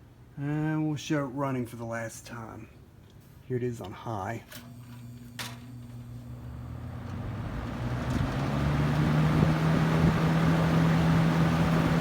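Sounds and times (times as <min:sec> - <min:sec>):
box fan motor hum: 0:04.6 - 0:12.0
rush of air from fan: 0:06.8 - 0:12.0.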